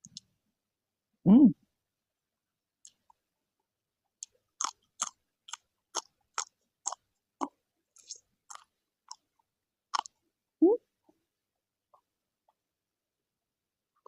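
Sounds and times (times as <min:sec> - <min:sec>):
person chewing food: 0:02.8 - 0:03.2, 0:04.1 - 0:10.2.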